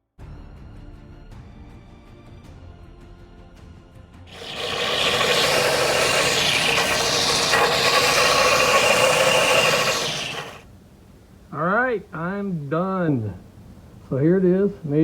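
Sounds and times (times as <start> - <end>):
steel blade rasping: 4.3 - 10.6.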